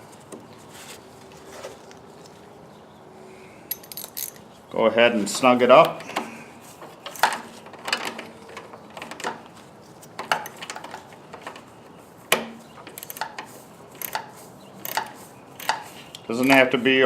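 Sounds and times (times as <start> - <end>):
hand tool clicking on metal: 12.9 - 16.6.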